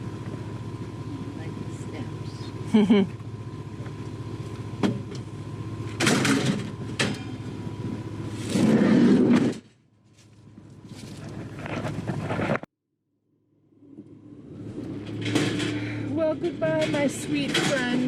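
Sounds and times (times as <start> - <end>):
van engine idling: 0.0 - 9.2
knocks and clunks: 4.8 - 5.3, 5.9 - 7.4, 14.9 - 18.0.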